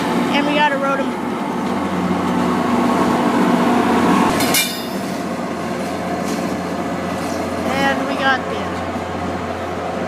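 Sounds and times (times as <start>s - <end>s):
train rolling past: 0.0s - 10.0s
sharp metallic clank: 4.3s - 5.2s.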